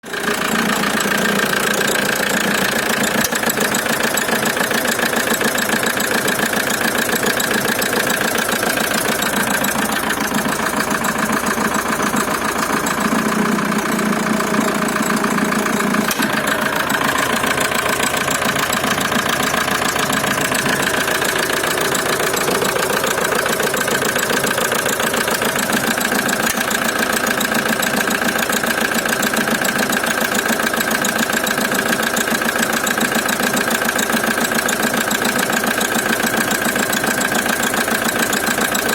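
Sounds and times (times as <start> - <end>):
diesel engine running: 0.0 - 38.9
engine knocking: 0.0 - 38.9.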